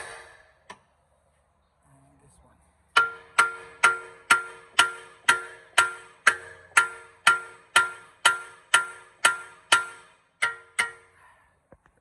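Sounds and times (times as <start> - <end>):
hammer ringing on steel: 3.0 - 11.2.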